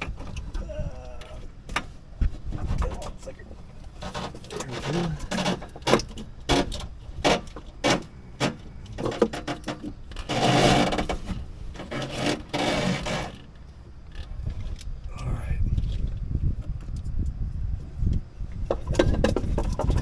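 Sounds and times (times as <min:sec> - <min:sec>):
rustling scrapes: 0:01.3 - 0:14.8.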